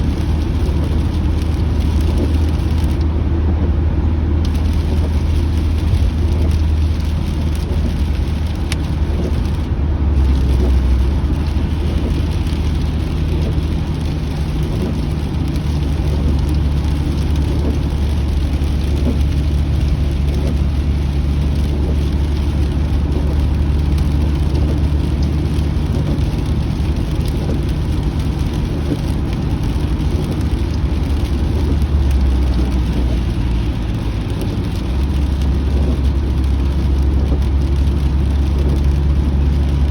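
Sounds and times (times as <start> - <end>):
car road and engine rumble: 0.0 - 39.9
rain on car body: 0.0 - 39.9.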